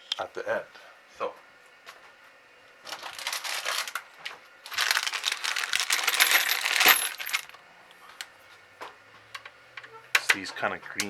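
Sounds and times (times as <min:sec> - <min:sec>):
small metal parts jingling: 0:04.7 - 0:07.6.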